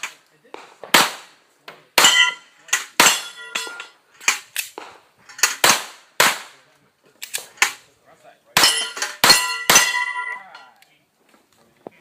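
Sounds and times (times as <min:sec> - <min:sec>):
pistol shots: 0:00.0 - 0:01.4, 0:04.6 - 0:06.6
steel plates ringing: 0:02.0 - 0:04.4, 0:08.6 - 0:10.8.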